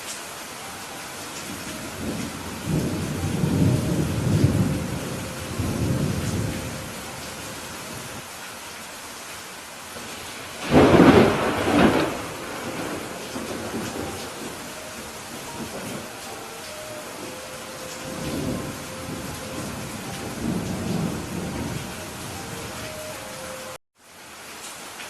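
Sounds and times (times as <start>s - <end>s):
steady rain: 0.0s - 25.0s
thunder rolling: 1.6s - 8.2s, 10.6s - 22.8s
sharp thunder clap: 10.6s - 14.5s.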